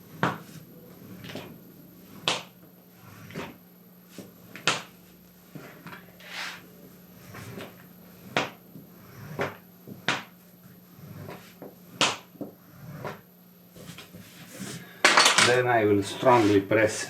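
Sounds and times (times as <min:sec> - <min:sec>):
bone folder rubbing leather: 0:09.0 - 0:09.6, 0:10.9 - 0:12.0, 0:12.6 - 0:13.2.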